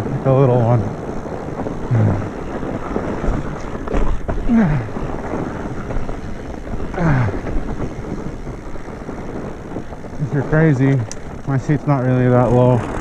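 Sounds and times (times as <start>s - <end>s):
bike tyres rolling on dirt: 0.0s - 13.0s
wind over microphone: 0.0s - 13.0s.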